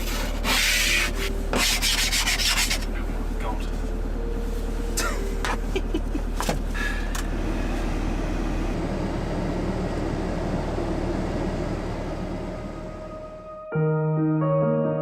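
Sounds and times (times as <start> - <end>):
van engine running: 2.7 - 13.6.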